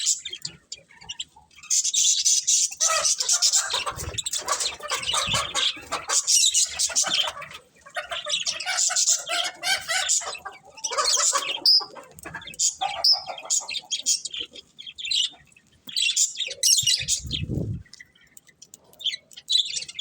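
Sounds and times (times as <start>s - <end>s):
budgerigars chirping and chattering: 0.0s - 20.0s.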